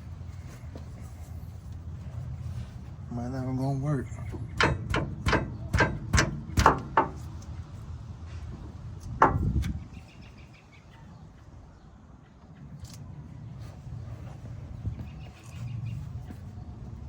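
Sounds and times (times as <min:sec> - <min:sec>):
sharp knocks of tools: 0:04.3 - 0:07.4.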